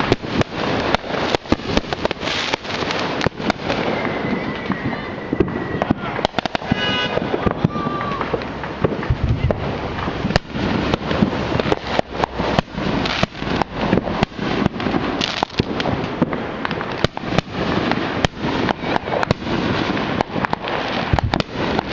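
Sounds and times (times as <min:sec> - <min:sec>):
fireworks crackling and banging: 0:00.0 - 0:21.9.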